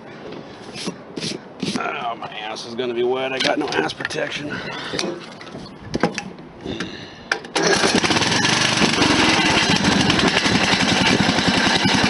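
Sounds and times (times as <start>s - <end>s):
electric starter cranking: 7.5s - 12.0s
baffle rattling in muffler: 7.6s - 12.0s
small engine running: 7.6s - 12.0s.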